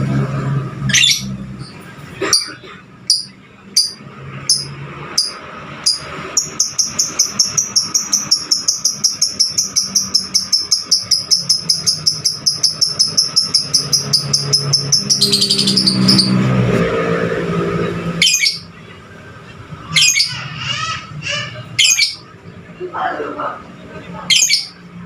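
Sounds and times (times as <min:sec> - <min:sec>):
lovebird chirping: 0:00.9 - 0:16.4, 0:18.2 - 0:18.7, 0:21.8 - 0:22.3.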